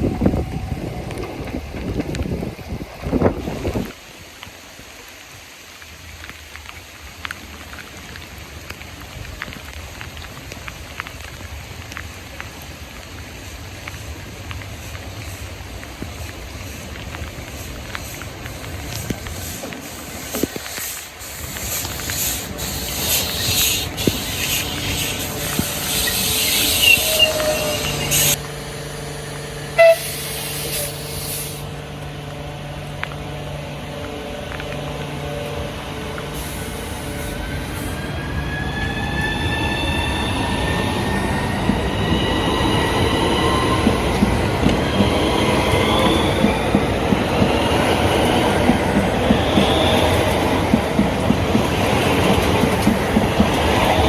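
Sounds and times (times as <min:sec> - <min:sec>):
train wheels clicking over rail joints: 0:13.4 - 0:31.7, 0:41.2 - 0:54.0
train traction motors whining: 0:15.0 - 0:54.0.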